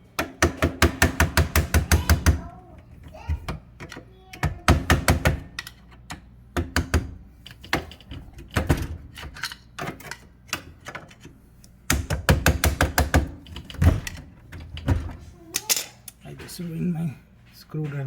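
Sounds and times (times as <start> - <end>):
hammer knocking on metal: 0.2 - 2.5, 11.9 - 13.4.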